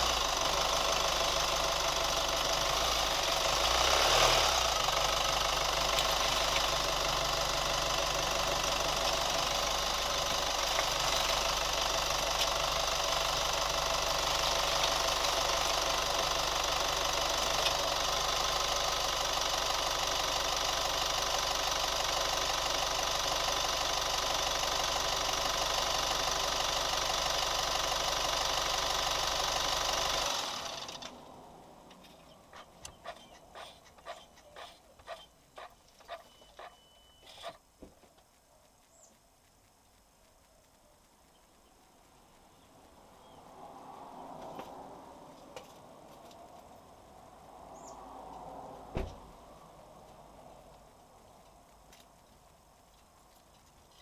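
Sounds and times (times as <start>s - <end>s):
engine running with ticking: 0.0s - 54.0s.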